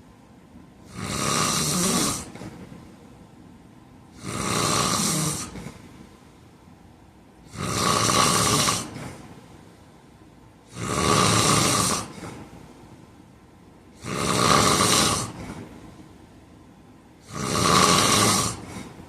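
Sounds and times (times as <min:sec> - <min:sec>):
man snoring: 0:00.8 - 0:02.6, 0:04.2 - 0:05.8, 0:07.5 - 0:09.2, 0:10.7 - 0:12.5, 0:14.0 - 0:15.7, 0:17.2 - 0:19.0.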